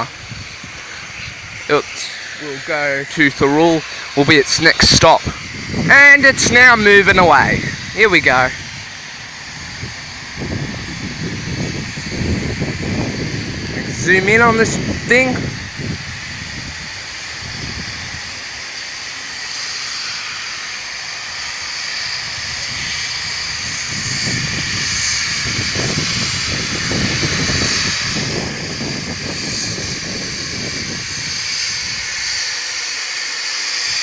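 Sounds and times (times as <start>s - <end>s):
steam hissing: 0.0s - 34.0s.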